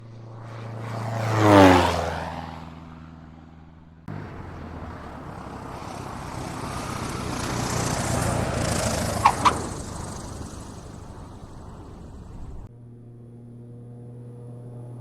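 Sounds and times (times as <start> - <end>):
propeller airplane flying past: 0.0 - 12.7
steady engine sound: 4.1 - 12.7.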